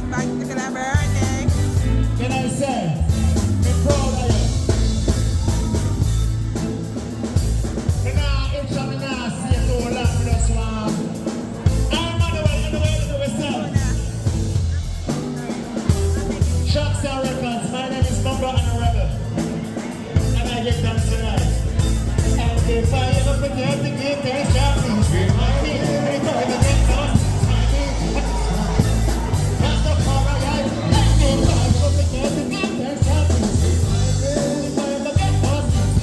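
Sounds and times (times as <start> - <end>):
reggae song with heavy bass beat: 0.0 - 36.0
man singing: 2.2 - 6.2, 22.4 - 36.0.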